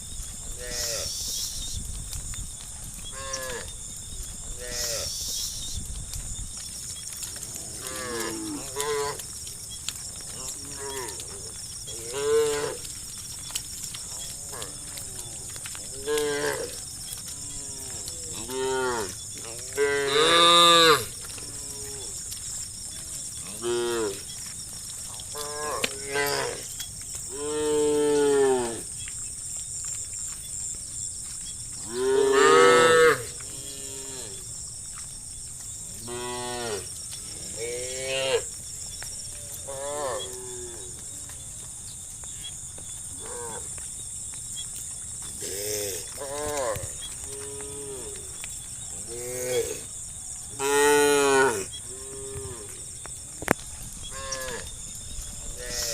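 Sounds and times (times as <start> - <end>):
cows mooing: 7.4 - 9.2, 10.2 - 13.0, 14.1 - 22.2, 25.2 - 26.7, 31.8 - 34.4, 50.6 - 52.8, 54.1 - 54.7.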